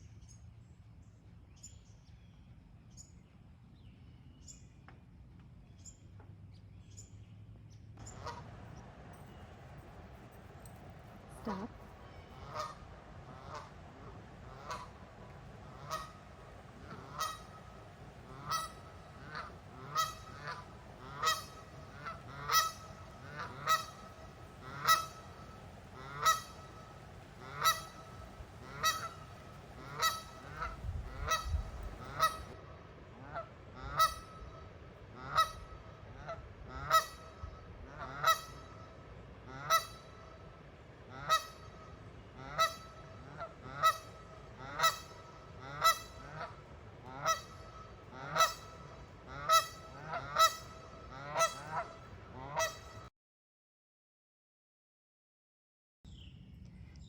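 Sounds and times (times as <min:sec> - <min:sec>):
geese honking: 0:08.0 - 0:53.1.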